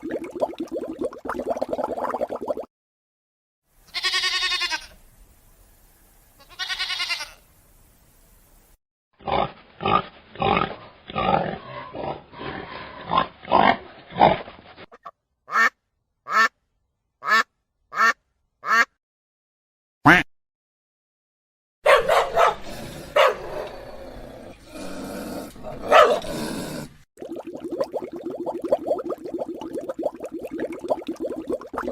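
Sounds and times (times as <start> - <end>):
pig grunts: 9.2 - 14.5, 22.4 - 27.0
dog barking: 21.8 - 23.8, 25.7 - 26.4.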